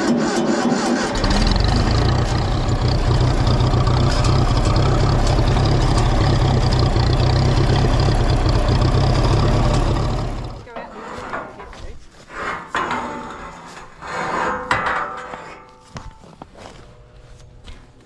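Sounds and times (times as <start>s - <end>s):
tractor engine running: 0.0s - 11.5s.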